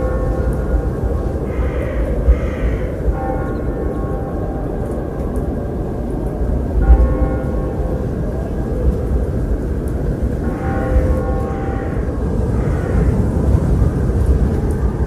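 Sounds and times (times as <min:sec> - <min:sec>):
church bell tolling: 0:00.0 - 0:14.4
low rush of wind: 0:00.0 - 0:15.0.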